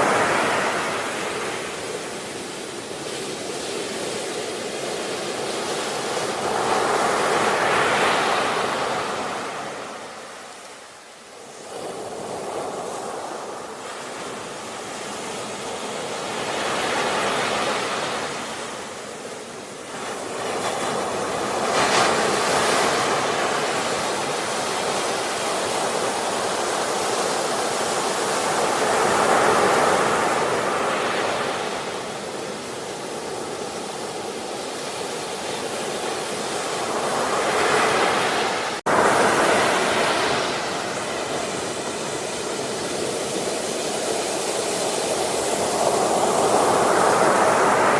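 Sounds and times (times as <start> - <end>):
sea waves breaking: 0.0 - 47.9.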